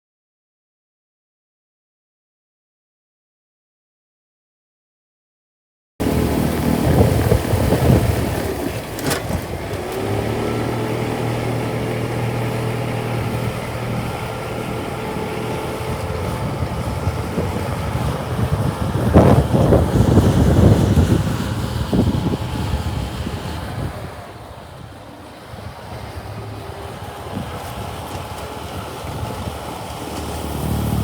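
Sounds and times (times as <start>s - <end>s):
blizzard wind: 6.0s - 31.0s
vehicle engine humming: 6.0s - 31.0s
wind buffeting microphone: 6.0s - 31.0s.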